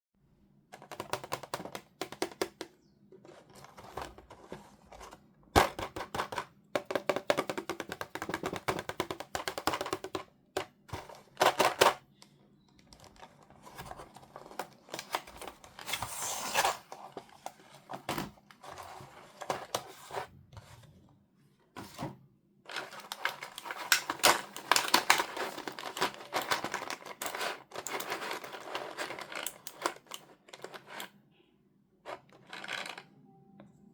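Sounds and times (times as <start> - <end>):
packaging rustling: 22.7 - 31.0.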